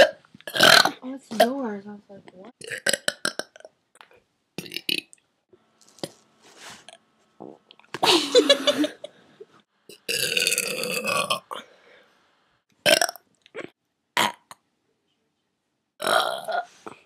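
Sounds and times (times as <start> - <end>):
person burping: 0.0 - 1.5, 2.6 - 3.7, 4.6 - 5.1, 9.9 - 11.6, 12.8 - 14.6, 16.0 - 17.0.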